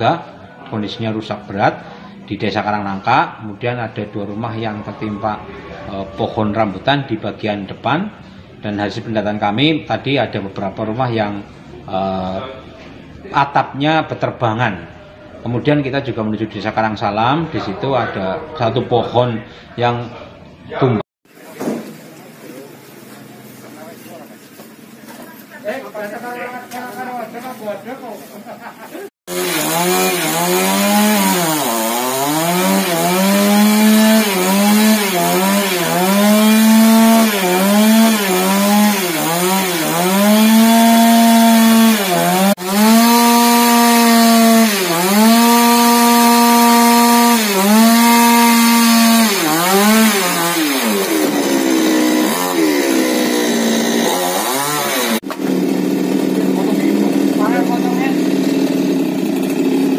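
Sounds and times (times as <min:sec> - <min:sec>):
chainsaw cutting: 0:29.3 - 0:59.9.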